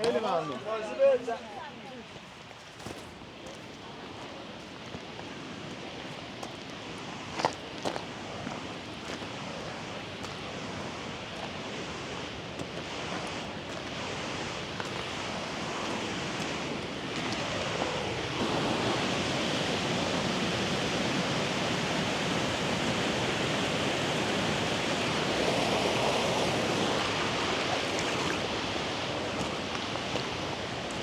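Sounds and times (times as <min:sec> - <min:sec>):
water rushing: 0:15.2 - 0:31.0.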